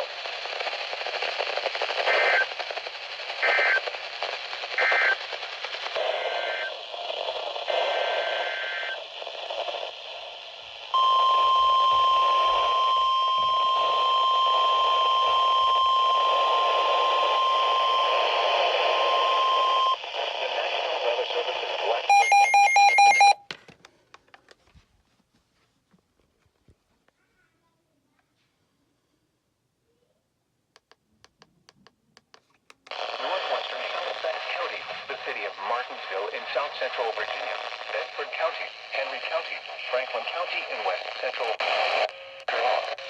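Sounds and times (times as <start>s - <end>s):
radio hiss: 0.0s - 23.3s, 32.9s - 43.0s
steady alarm tone: 22.1s - 23.4s.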